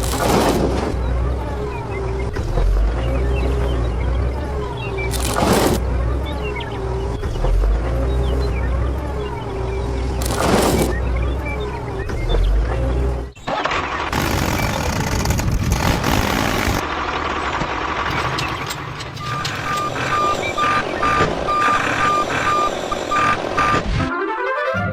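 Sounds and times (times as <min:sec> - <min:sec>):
heavy vehicle engine running: 0:00.0 - 0:24.0
reversing alarm beeping: 0:01.0 - 0:13.4, 0:18.1 - 0:24.0.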